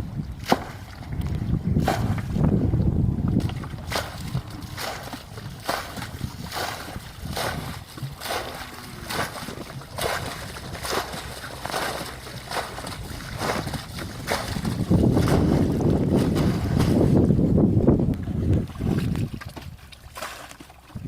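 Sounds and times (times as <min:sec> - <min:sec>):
water sloshing and splashing: 0:00.0 - 0:21.0.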